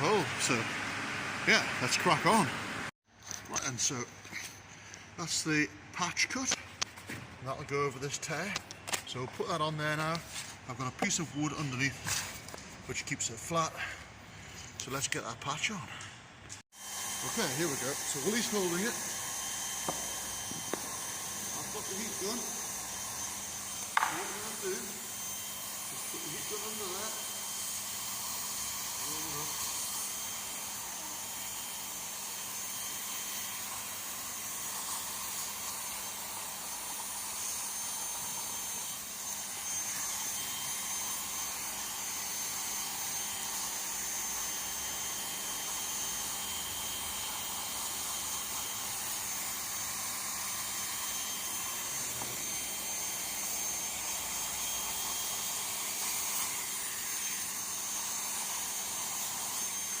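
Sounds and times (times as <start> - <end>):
heat gun blowing hot air: 16.7 - 60.0.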